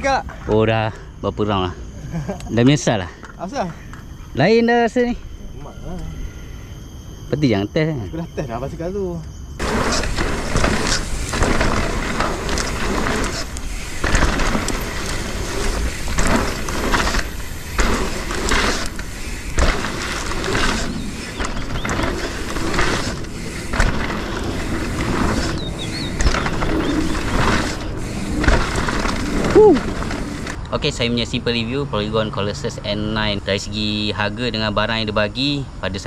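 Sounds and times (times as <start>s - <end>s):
bike rattling over bumps: 9.5s - 35.2s
tyre rumble on dirt: 9.6s - 30.6s.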